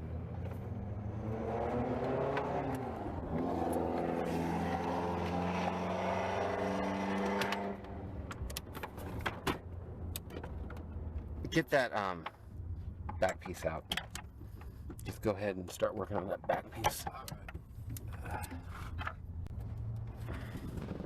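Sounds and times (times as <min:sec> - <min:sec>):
vehicle engine revving: 0:00.0 - 0:08.2.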